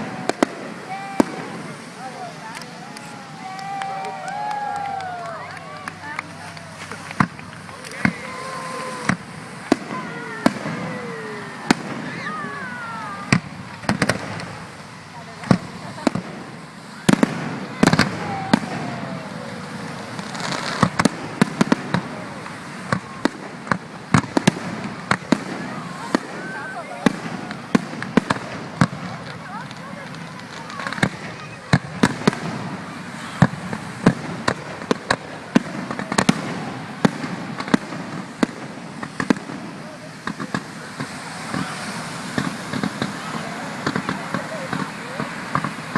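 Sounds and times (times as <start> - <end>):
fireworks bursting with bangs: 0.0 - 45.9
steady background noise: 0.0 - 45.9.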